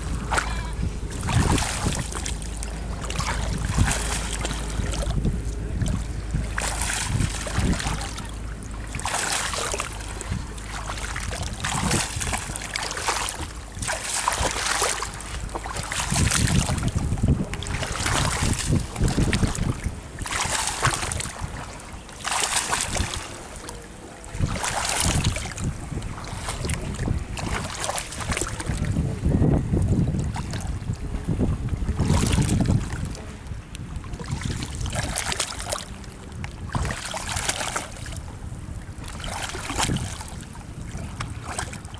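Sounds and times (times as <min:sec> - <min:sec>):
water splashing in strokes: 0:00.0 - 0:29.0, 0:29.8 - 0:33.4, 0:34.0 - 0:41.9
wind rumble on microphone: 0:00.0 - 0:41.9.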